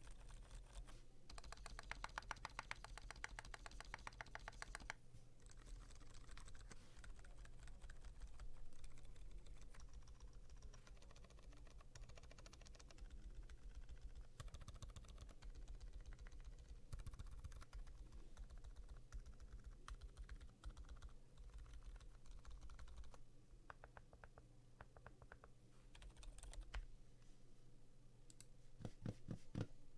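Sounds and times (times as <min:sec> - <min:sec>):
soft muted keyboard typing: 0:00.0 - 0:26.9.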